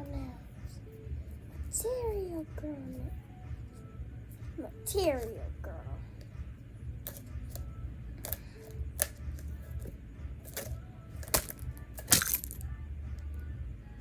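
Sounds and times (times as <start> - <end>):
low steady rumble: 0.0 - 14.0
plastic toys clicking: 10.5 - 12.6.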